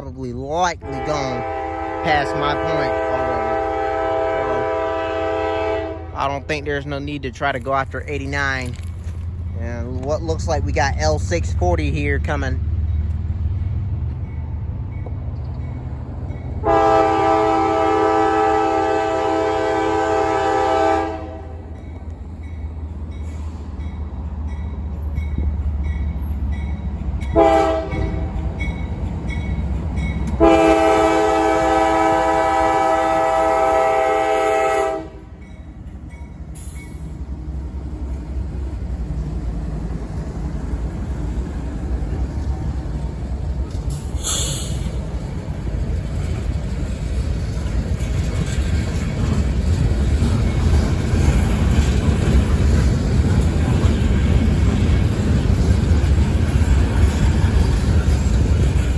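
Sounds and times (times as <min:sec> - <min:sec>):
low rumble of train: 0:00.0 - 0:58.9
locomotive air horn blasts: 0:00.8 - 0:06.2, 0:16.6 - 0:21.7, 0:27.4 - 0:28.4, 0:30.4 - 0:35.4.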